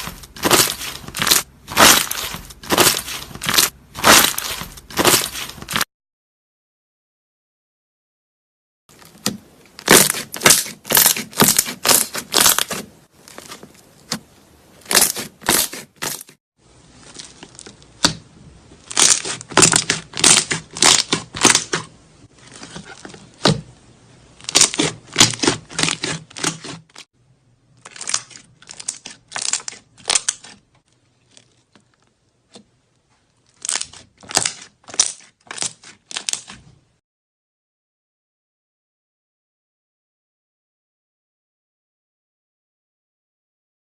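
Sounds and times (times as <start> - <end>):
slime crackling and popping: 0.0 - 5.8, 9.1 - 13.6, 14.8 - 16.3, 18.8 - 21.9, 24.4 - 26.7, 27.8 - 30.6, 33.4 - 36.6.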